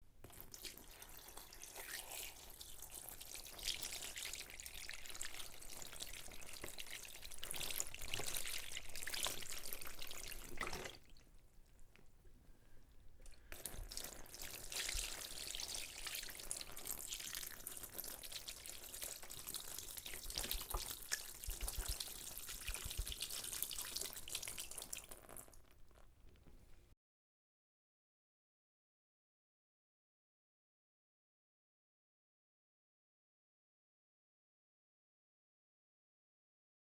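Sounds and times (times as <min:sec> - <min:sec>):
person washing with water: 0:00.2 - 0:12.0, 0:13.2 - 0:25.8.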